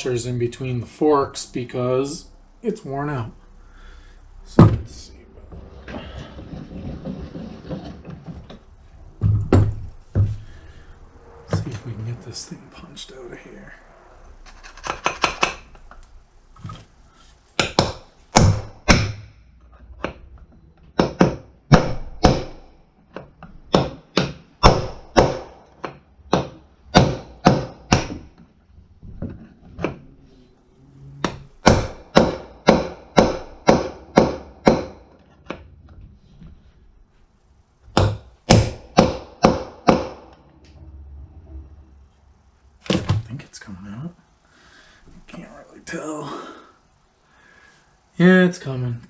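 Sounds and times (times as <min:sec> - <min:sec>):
hammer striking a punch: 0:17.6 - 0:19.3, 0:21.0 - 0:22.7, 0:23.7 - 0:28.3, 0:31.2 - 0:35.0, 0:38.0 - 0:40.3.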